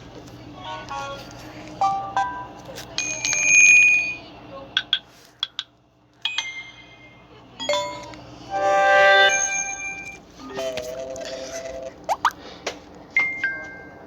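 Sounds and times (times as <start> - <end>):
phone ringtone melodies: 7.7 - 10.2.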